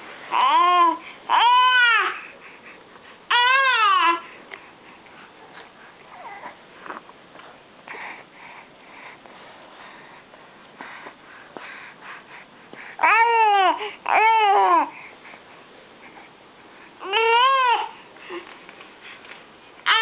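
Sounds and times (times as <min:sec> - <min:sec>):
baby crying: 0:00.3 - 0:02.2, 0:03.3 - 0:04.2, 0:13.0 - 0:14.9, 0:17.0 - 0:17.9.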